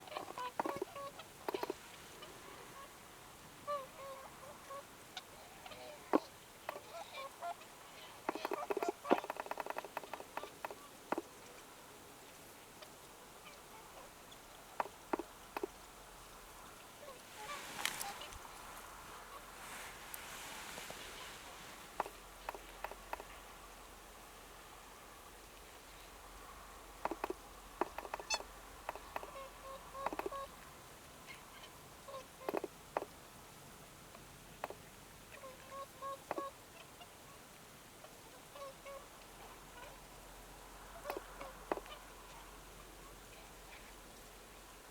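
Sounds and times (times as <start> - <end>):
snow geese calling: 0.0 - 11.6, 16.5 - 23.5, 27.0 - 30.6
geese calling softly: 0.0 - 44.9.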